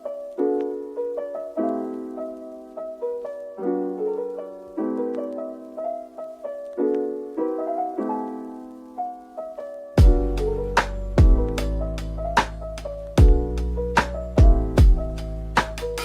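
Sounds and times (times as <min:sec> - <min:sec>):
soft piano chords: 0:00.0 - 0:16.0.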